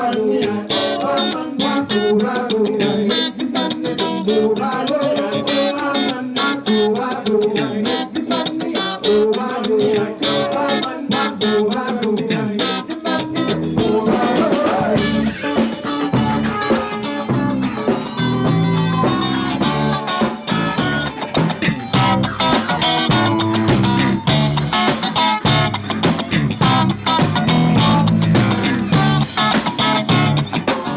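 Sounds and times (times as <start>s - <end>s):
electric guitar: 0.0s - 30.9s
live band playing rock: 0.0s - 30.9s
bass: 13.2s - 30.9s
drum groove: 13.2s - 30.9s.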